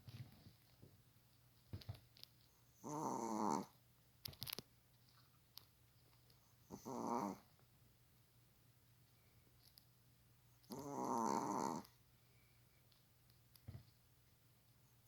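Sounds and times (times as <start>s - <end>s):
dog snoring: 2.7s - 3.8s, 6.6s - 7.5s, 10.7s - 11.9s.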